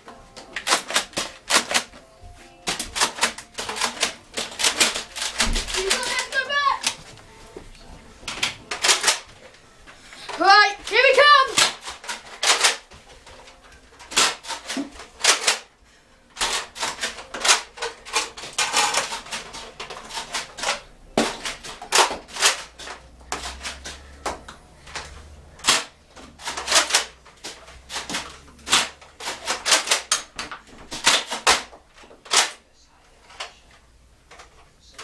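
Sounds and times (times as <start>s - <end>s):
toy blaster plastic clicks: 2.7s - 7.0s.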